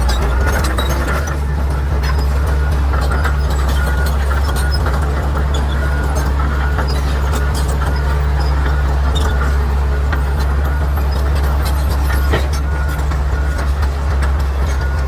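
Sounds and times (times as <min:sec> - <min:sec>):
bulldozer diesel engine rumbling: 0:00.0 - 0:15.0.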